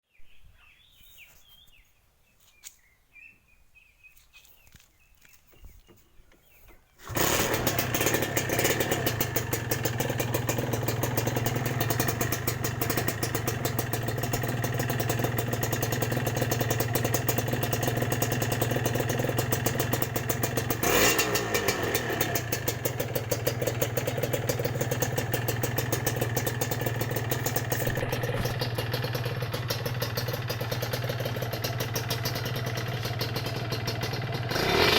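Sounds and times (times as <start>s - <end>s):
two-stroke motorcycle engine: 7.0s - 34.9s.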